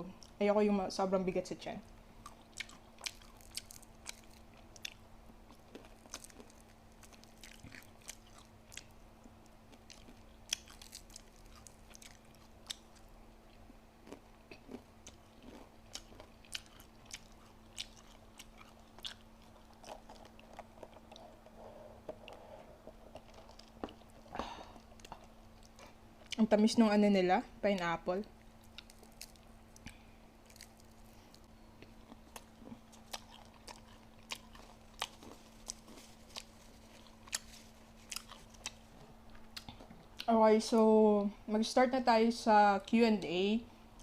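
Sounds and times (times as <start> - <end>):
faint steady hum: 0.0 - 44.0
food crunches: 2.2 - 21.5, 28.4 - 40.3
person chewing food: 2.2 - 26.4, 28.4 - 40.3.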